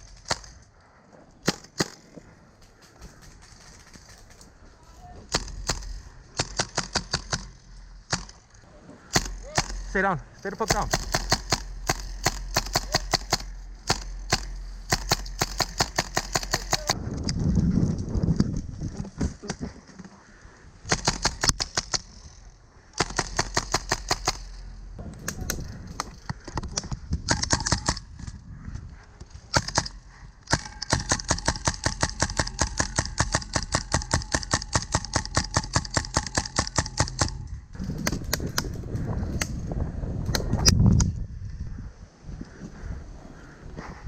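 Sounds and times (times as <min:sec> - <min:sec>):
airsoft guns firing bursts: 0:05.3 - 0:08.3, 0:09.1 - 0:17.0, 0:20.9 - 0:22.2, 0:23.0 - 0:24.7, 0:29.5 - 0:37.4.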